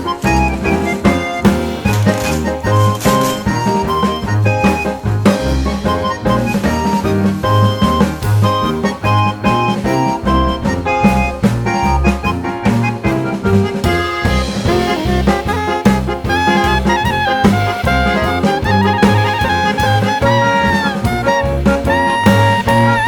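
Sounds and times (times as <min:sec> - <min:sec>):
upbeat jazz with saxophone: 0:00.0 - 0:23.0.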